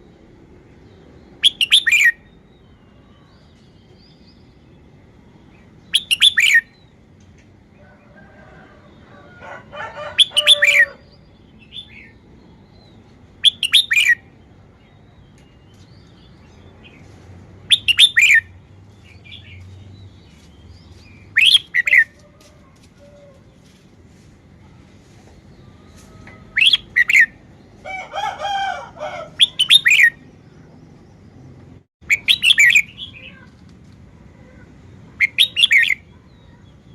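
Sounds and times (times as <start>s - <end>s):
bird singing whistled phrases: 1.4s - 2.3s, 5.9s - 6.7s, 13.4s - 14.2s, 21.3s - 22.1s, 29.4s - 30.2s, 32.1s - 33.2s, 35.2s - 36.0s.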